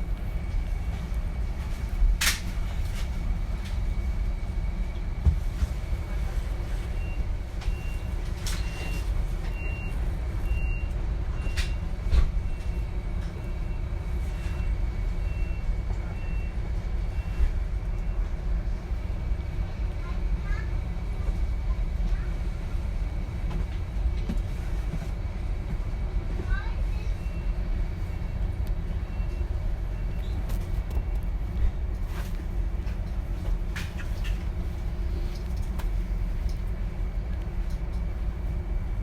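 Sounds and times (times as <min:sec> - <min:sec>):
train interior rumble and whine: 0:00.0 - 0:39.0.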